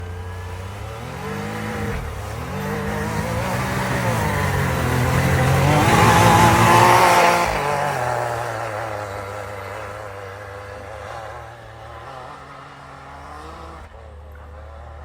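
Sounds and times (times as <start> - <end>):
engine revving: 0.0 - 15.0.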